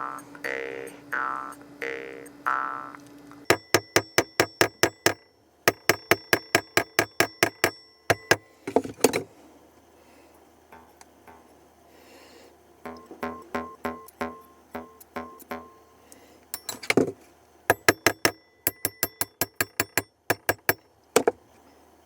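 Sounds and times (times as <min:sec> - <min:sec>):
hammer striking metal: 0:03.5 - 0:08.5, 0:12.8 - 0:15.9, 0:16.6 - 0:17.0, 0:17.7 - 0:20.8.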